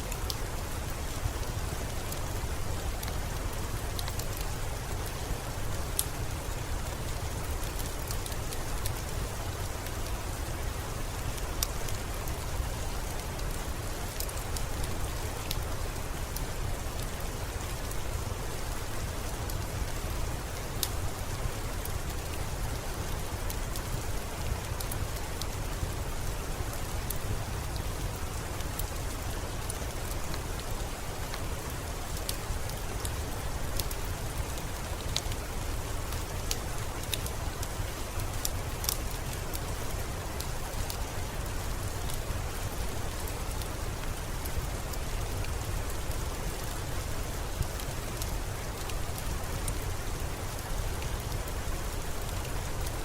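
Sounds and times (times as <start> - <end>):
steady rain: 0.0 - 53.0
wood fire crackling and popping: 29.6 - 41.0, 47.5 - 49.0.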